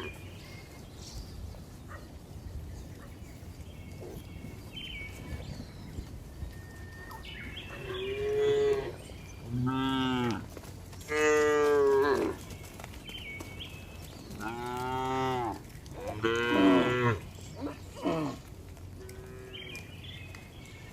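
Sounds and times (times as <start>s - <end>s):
cows mooing: 7.0s - 10.5s, 11.1s - 12.4s, 14.4s - 19.7s.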